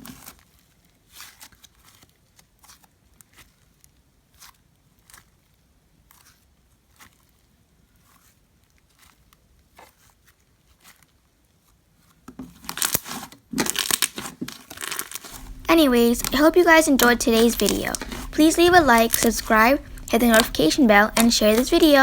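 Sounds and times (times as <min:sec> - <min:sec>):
slime squishing and popping: 0:13.6 - 0:14.2, 0:14.8 - 0:15.6.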